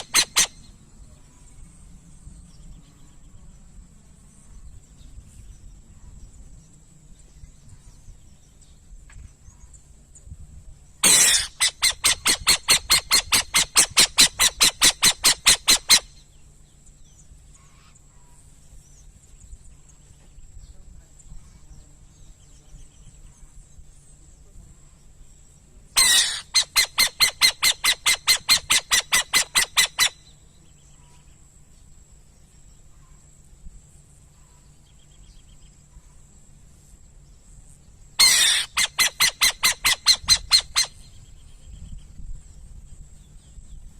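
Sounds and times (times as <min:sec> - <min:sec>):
owl harsh chattering: 0:00.0 - 0:00.8, 0:11.0 - 0:16.2, 0:26.0 - 0:30.3, 0:38.2 - 0:41.2.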